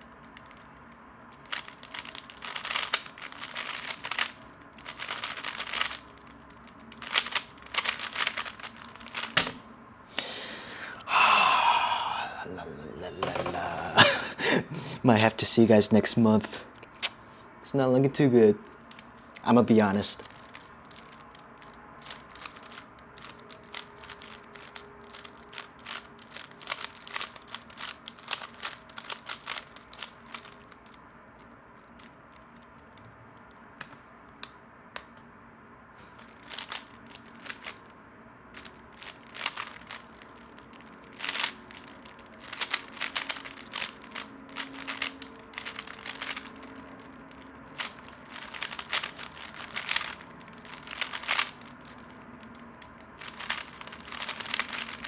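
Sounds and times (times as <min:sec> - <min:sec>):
puzzle cube plastic clicks: 0:00.0 - 0:09.6, 0:18.8 - 0:35.3, 0:36.1 - 0:37.9, 0:38.5 - 0:55.0.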